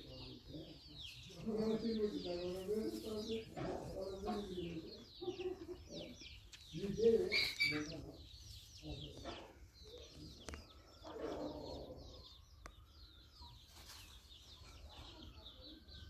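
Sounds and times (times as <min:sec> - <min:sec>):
chickens clucking: 0:00.0 - 0:16.0
small birds chirping: 0:00.0 - 0:16.0.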